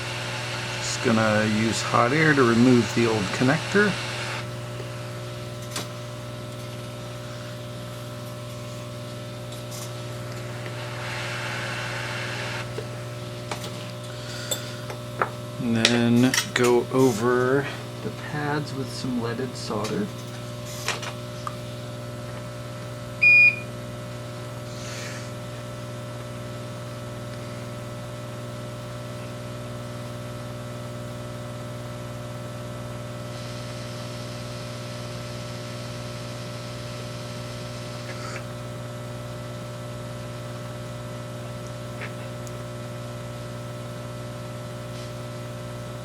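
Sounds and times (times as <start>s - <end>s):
equipment humming: 0.0s - 29.4s
short electronic beep: 23.2s - 23.7s.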